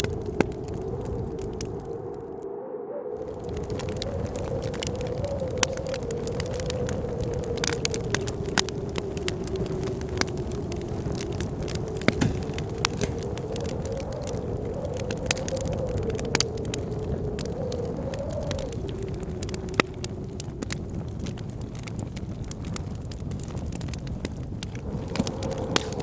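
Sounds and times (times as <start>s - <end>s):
wood fire crackling and popping: 0.0s - 2.3s, 3.2s - 26.0s
blizzard wind howling: 0.0s - 26.0s.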